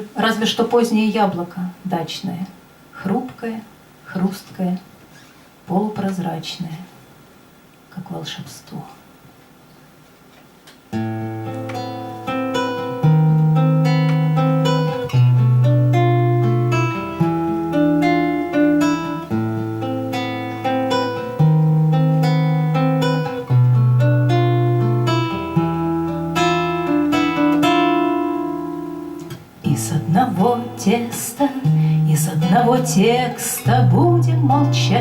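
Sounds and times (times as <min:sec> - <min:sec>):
acoustic guitar picked chords: 0:10.9 - 0:35.0.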